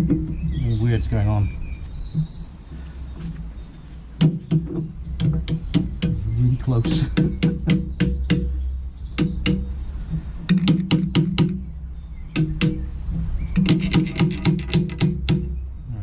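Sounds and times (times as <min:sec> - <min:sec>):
low steady hum: 0:00.0 - 0:16.0
hammer striking steel wedge: 0:09.2 - 0:09.7, 0:10.5 - 0:11.6, 0:12.4 - 0:12.9.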